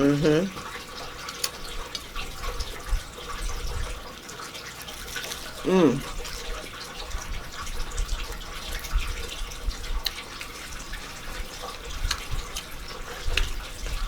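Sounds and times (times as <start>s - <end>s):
person chewing food: 0.6s - 6.7s, 8.0s - 14.0s
wet mouth clicks and smacks: 12.0s - 13.6s.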